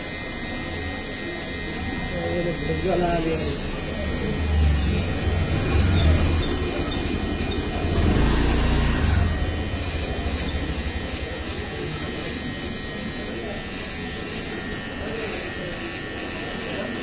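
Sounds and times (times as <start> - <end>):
electric massager buzzing: 0.0 - 17.0.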